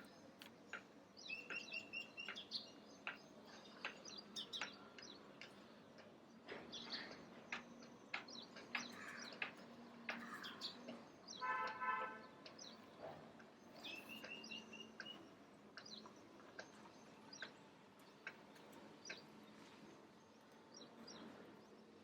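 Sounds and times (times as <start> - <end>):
small birds chirping: 0.0 - 5.6, 12.4 - 22.0.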